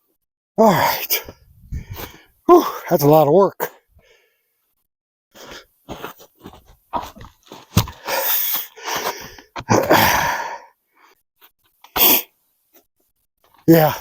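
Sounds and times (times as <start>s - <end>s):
man breathing hard: 0.7s - 2.4s, 4.0s - 4.4s, 5.3s - 5.7s, 7.8s - 11.2s.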